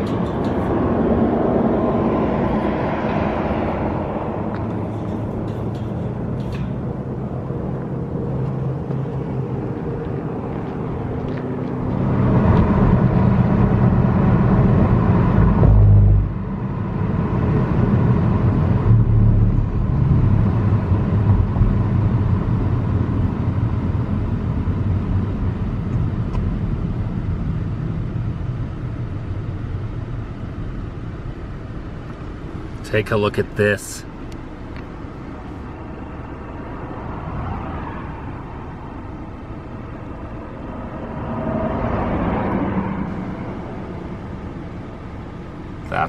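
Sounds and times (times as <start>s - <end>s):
car road and engine rumble: 0.0s - 46.0s.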